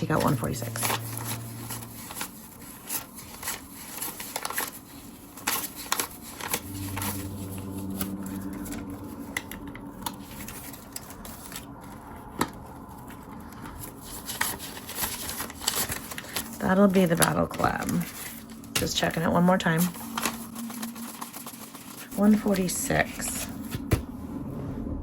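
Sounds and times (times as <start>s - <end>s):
banknotes flicked and rustled: 0.0s - 8.1s.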